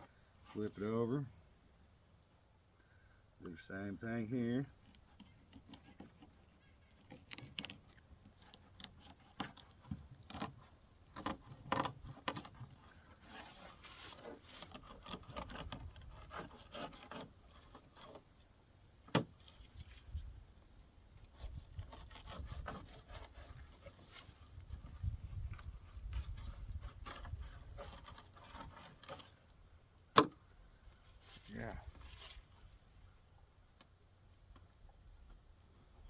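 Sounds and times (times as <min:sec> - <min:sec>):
knife scraping fish: 0:11.2 - 0:18.3, 0:21.4 - 0:24.3.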